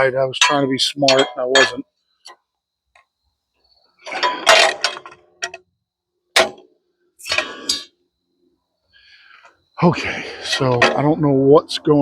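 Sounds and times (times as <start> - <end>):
metal clanks and knocks: 0.0 - 1.9, 4.0 - 5.7, 6.3 - 6.7, 10.5 - 11.2.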